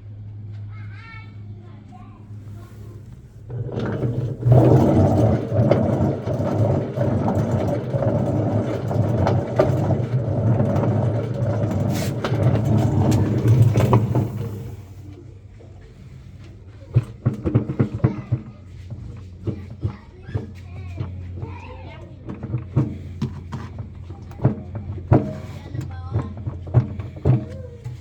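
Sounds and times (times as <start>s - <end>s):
washing machine rumbling: 0.6s - 28.0s.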